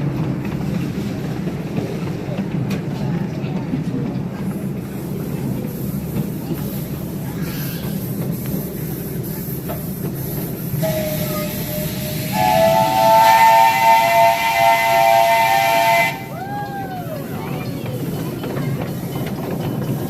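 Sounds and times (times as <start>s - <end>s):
train rumbling along track: 0.0s - 20.0s
steam locomotive chime whistle: 10.8s - 16.4s.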